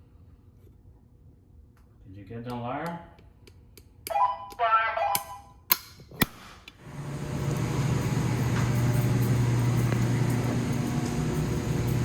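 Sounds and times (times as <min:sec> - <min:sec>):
low machinery hum: 0:06.8 - 0:12.0.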